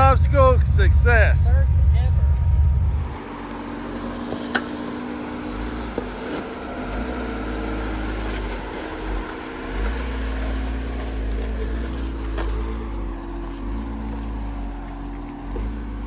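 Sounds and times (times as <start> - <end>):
truck engine low rumble: 0.0 - 16.0.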